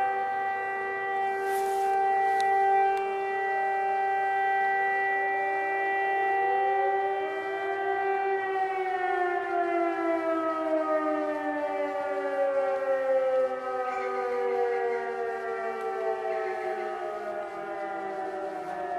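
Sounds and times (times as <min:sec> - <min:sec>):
siren wailing: 0:00.0 - 0:18.9
steady siren tone: 0:00.0 - 0:18.9.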